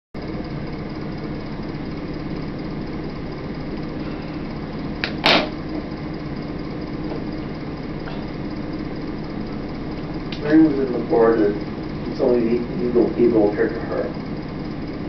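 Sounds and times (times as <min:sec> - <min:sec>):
low mechanical hum: 0:00.2 - 0:15.0
sharp knock: 0:05.0 - 0:05.6.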